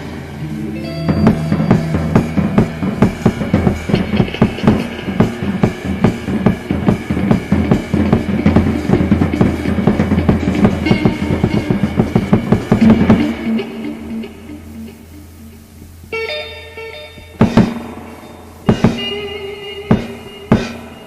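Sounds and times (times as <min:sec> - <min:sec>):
rock band playing: 0:00.0 - 0:21.0
drum kit fast beat: 0:01.0 - 0:15.1, 0:17.4 - 0:21.0.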